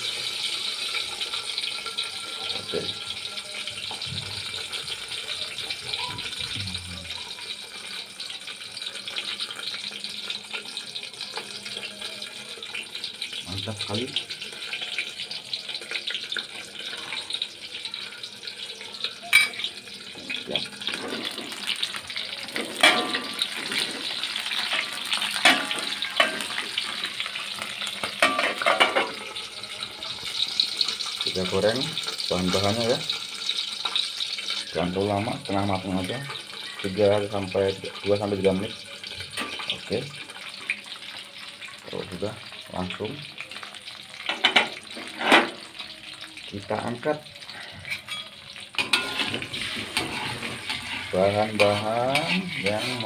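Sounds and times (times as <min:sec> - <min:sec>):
vegetables sizzling in hot oil: 0:00.0 - 0:53.0
sharp pops of frying: 0:14.0 - 0:29.5, 0:30.2 - 0:34.7, 0:38.7 - 0:41.8, 0:42.5 - 0:46.4, 0:48.1 - 0:52.9.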